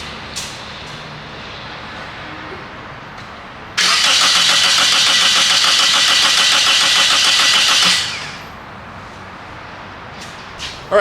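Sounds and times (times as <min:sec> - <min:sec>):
car engine cranking on starter: 0:03.8 - 0:08.6.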